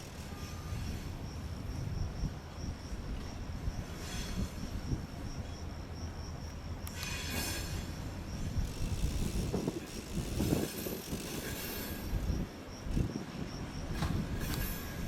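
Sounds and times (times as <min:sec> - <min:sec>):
metallic wheel squeals: 0:00.0 - 0:01.5
train rumbling on rails: 0:00.0 - 0:15.0.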